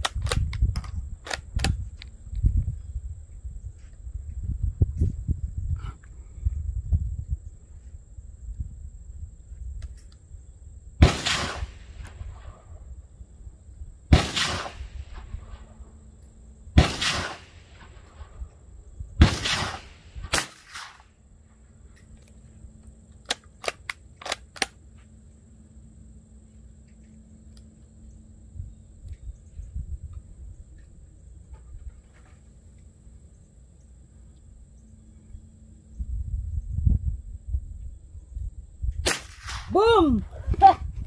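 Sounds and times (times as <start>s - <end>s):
sharp crack: 11.0s - 12.5s, 14.1s - 15.6s, 16.8s - 18.3s, 19.2s - 21.1s, 39.0s - 39.8s
rifle shots with rolling echo: 11.0s - 12.8s, 14.1s - 15.9s, 16.8s - 18.5s, 19.2s - 21.1s, 39.0s - 39.7s.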